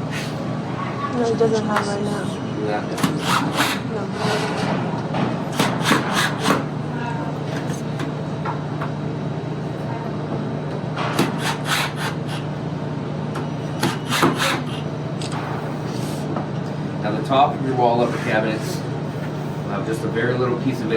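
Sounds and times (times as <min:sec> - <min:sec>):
steady low hum: 0:00.0 - 0:13.8.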